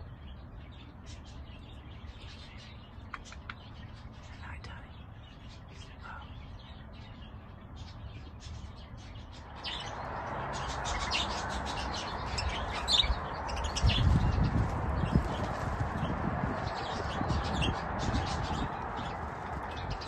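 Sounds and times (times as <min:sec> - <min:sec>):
budgerigars chirping and chattering: 0:00.2 - 0:20.0
steady rushing noise: 0:09.4 - 0:20.0.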